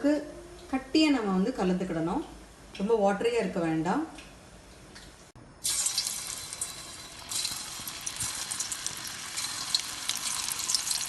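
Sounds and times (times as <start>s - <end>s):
food deep-frying in oil: 5.6s - 11.0s.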